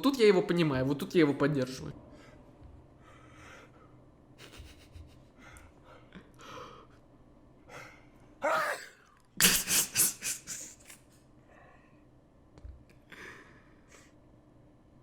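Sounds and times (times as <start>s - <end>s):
man breathing in: 2.1s - 4.0s
man sneezing: 8.4s - 11.0s.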